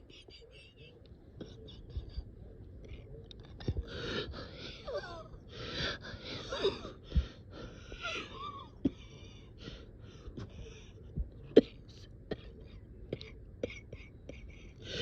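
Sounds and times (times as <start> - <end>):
person breathing laboriously: 3.6 - 11.4, 13.7 - 15.0.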